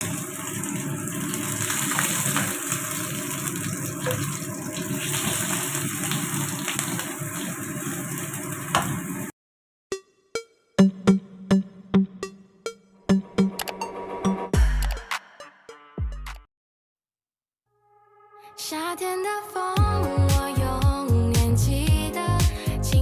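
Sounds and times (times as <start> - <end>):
hot oil sizzling and popping: 0.0 - 9.3
electronic drum beats: 9.9 - 16.4.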